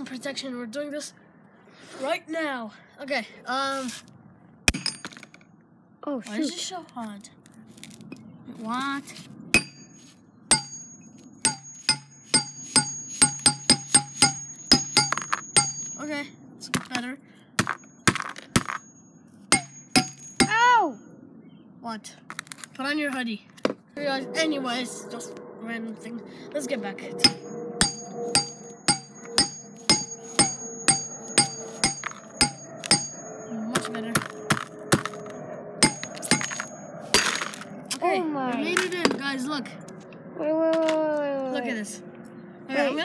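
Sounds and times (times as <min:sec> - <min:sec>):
hammer striking glass bottle: 0:09.6 - 0:09.9, 0:10.5 - 0:16.0, 0:19.5 - 0:20.6, 0:27.2 - 0:37.6.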